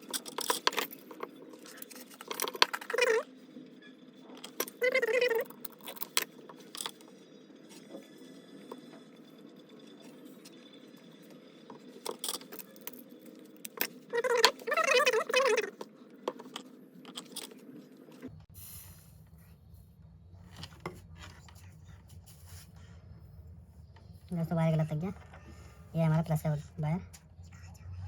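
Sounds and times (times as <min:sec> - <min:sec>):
small parts clicking and knocking: 0:00.0 - 0:03.2, 0:04.3 - 0:07.2, 0:11.3 - 0:14.7, 0:15.4 - 0:17.7.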